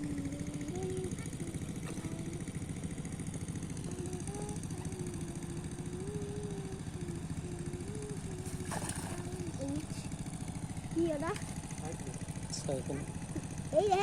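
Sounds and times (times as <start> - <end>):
small engine running: 0.0 - 14.0.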